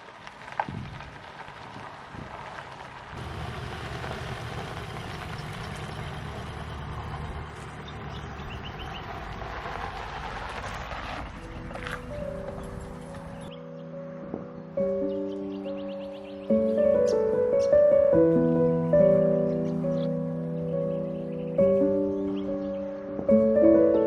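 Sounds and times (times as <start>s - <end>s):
vehicle engine rumbling: 0.0s - 13.6s.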